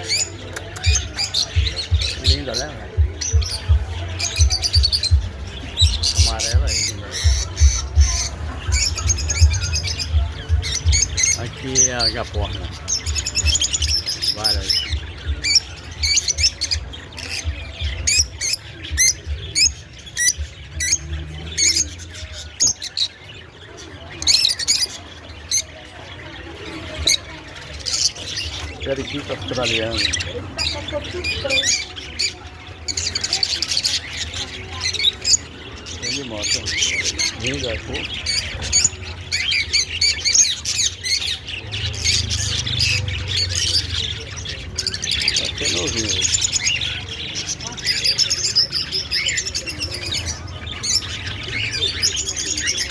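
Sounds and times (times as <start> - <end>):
lovebirds chirping and squawking: 0.0 - 52.9.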